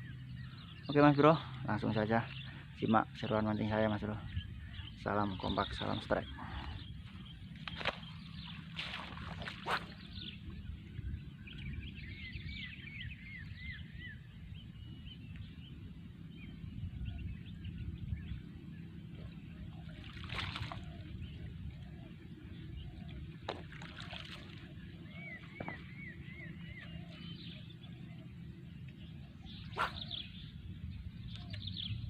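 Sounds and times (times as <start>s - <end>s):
bird chirping: 0.0s - 20.0s, 24.8s - 32.0s
steady low rumble: 0.0s - 32.0s.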